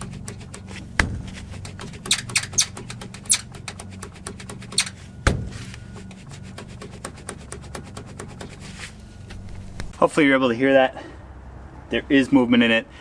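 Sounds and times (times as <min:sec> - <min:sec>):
suspension clicking and knocking: 0:00.0 - 0:08.6.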